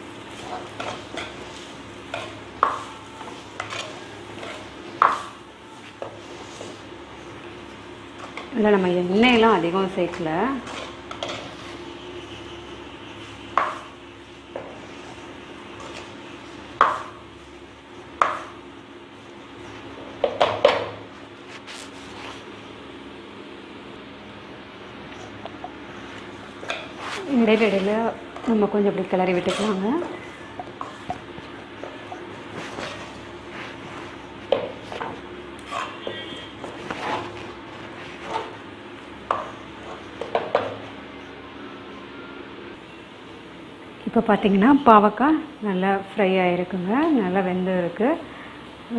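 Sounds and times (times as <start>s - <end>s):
food sizzling: 0.0s - 44.0s
low frying hiss: 0.0s - 48.9s
spoon knocking clay pot: 29.4s - 33.2s.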